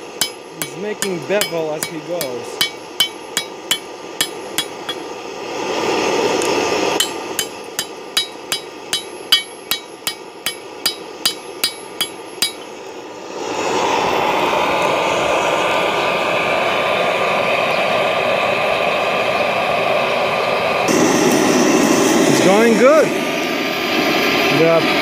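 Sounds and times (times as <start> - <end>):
hammer striking hot steel: 0.0 - 5.2, 6.4 - 12.8
forge burner rushing: 0.0 - 17.6, 20.6 - 25.0.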